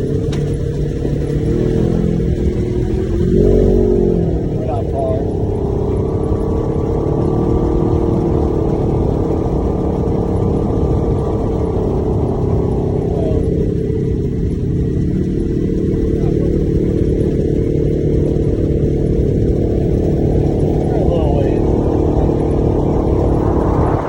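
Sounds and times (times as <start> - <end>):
vehicle engine drone: 0.0 - 24.0
rushing noise: 22.0 - 24.0.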